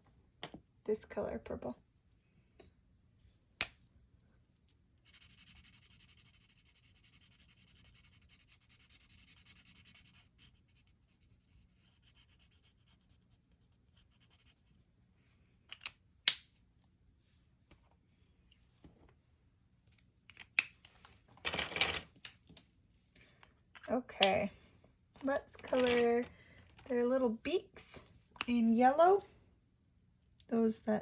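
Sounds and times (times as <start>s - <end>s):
pencil scratching on paper: 5.1s - 14.8s.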